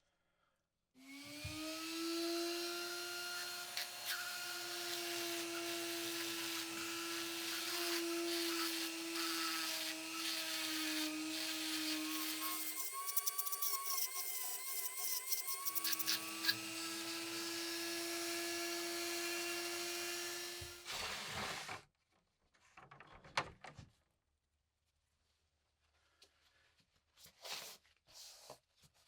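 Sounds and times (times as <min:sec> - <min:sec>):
power tool spinning down: 0:01.0 - 0:21.8
power tool whine: 0:01.0 - 0:21.8.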